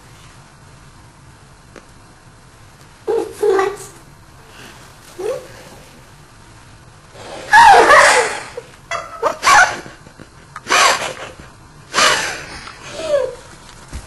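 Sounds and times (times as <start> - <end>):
sped-up high-pitched laughter: 7.5 - 13.4.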